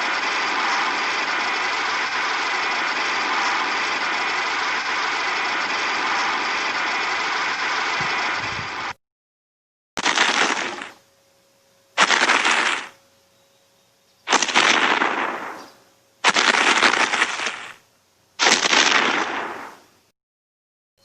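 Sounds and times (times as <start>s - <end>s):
storm rushing noise: 0.0s - 9.0s, 14.3s - 17.8s, 18.5s - 19.9s.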